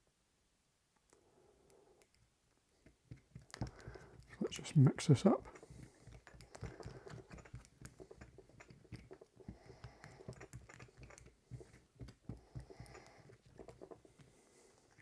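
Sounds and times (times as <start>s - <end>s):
stirrer scraping plastic cup: 3.2s - 15.0s.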